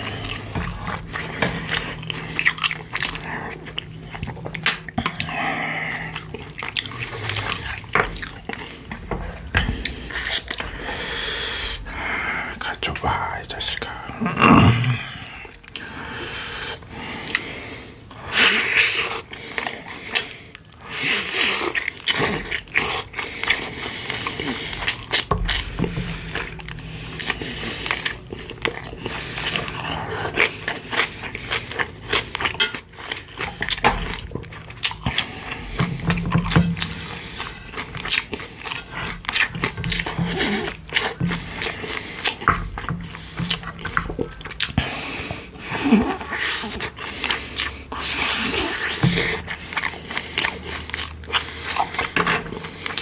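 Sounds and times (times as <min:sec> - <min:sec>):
wet chewing and lip smacking: 0:00.0 - 0:14.2, 0:15.0 - 0:53.0.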